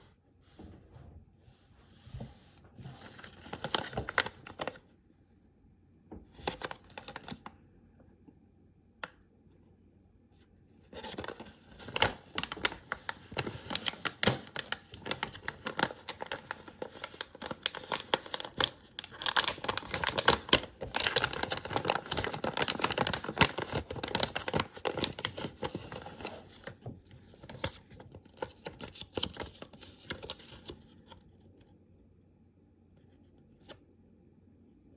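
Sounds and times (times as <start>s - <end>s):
packaging crinkling and tearing: 3.0s - 4.8s, 11.0s - 30.8s.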